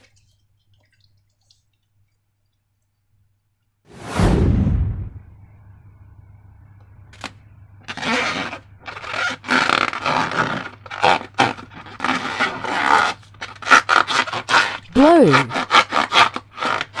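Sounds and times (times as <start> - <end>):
slime squishing and scraping: 7.9 - 17.0.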